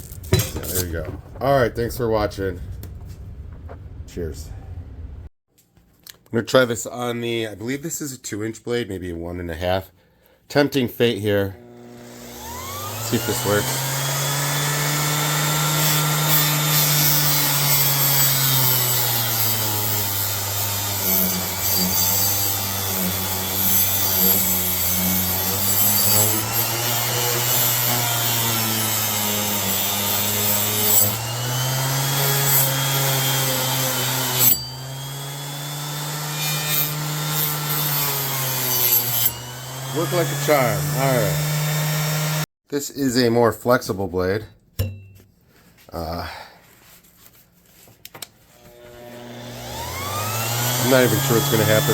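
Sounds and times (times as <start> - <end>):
orbital sander motor hum: 11.6 - 17.7, 19.1 - 42.4, 48.7 - 51.9
sander scraping metal: 11.6 - 42.4, 48.5 - 51.9.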